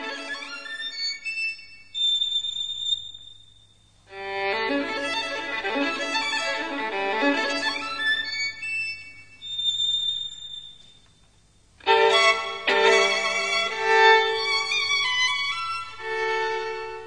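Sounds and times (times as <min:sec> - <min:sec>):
violin playing: 0:00.0 - 0:01.6, 0:04.1 - 0:09.1, 0:11.8 - 0:17.0.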